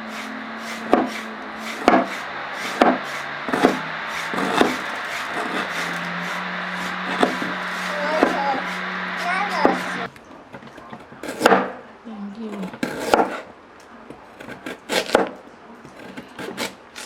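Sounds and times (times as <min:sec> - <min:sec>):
knife chopping on wooden board: 0:00.7 - 0:06.0, 0:06.8 - 0:07.6, 0:08.2 - 0:08.4, 0:10.6 - 0:11.8, 0:12.6 - 0:13.5, 0:14.1 - 0:16.8.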